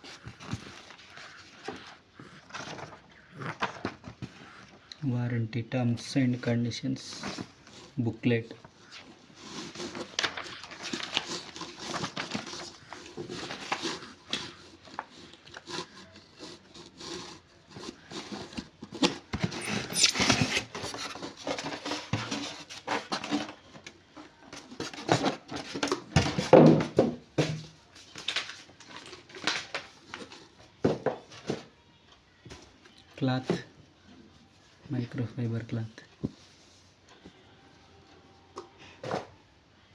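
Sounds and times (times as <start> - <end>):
packaging rustling: 7.1 - 26.4, 27.9 - 31.6.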